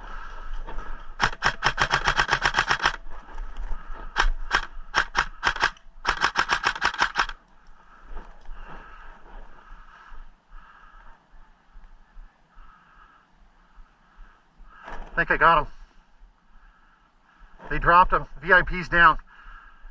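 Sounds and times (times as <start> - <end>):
airsoft gun firing: 1.2 - 3.0, 4.2 - 7.4.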